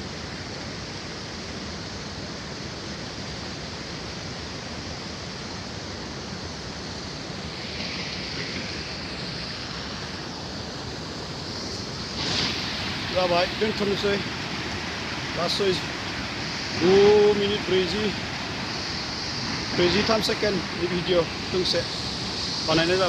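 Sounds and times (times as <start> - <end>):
waterfall roaring: 6.7 - 23.0.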